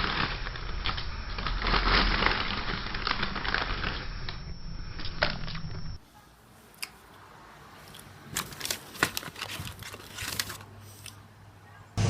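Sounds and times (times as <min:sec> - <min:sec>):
dense crackling and clicking: 0:00.0 - 0:06.0.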